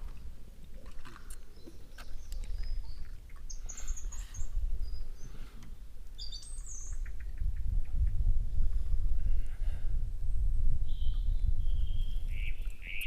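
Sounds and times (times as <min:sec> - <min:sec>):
small birds chirping: 0:00.0 - 0:08.2, 0:10.9 - 0:13.0.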